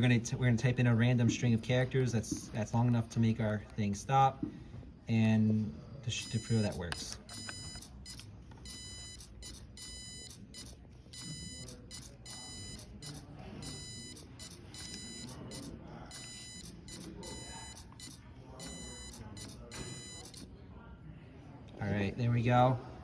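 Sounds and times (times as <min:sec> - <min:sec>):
morse code buzzer beeping: 0:06.2 - 0:20.5.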